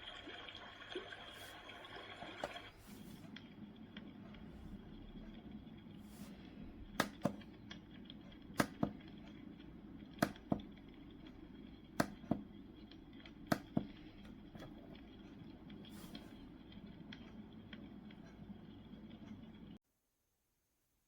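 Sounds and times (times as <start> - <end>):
faint steady hum: 0.0 - 19.8
paired sharp clicks: 7.0 - 9.3.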